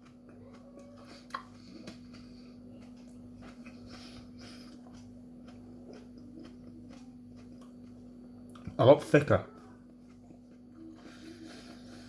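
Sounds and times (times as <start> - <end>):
faint chewing and mouth sounds: 0.0 - 12.0
steady low hum: 0.0 - 12.0
soft breaths: 3.7 - 4.9, 10.8 - 12.0.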